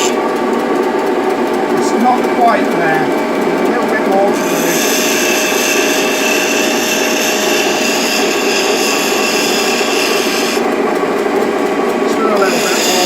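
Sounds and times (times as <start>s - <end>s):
bench grinder motor hum: 0.0s - 13.0s
chisel grinding hiss: 4.4s - 10.6s, 12.4s - 13.0s.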